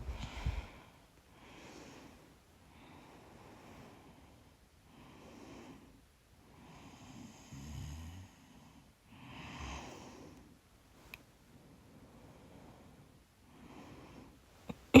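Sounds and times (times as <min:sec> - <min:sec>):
woman breathing deeply: 0:00.0 - 0:07.7, 0:08.4 - 0:10.6.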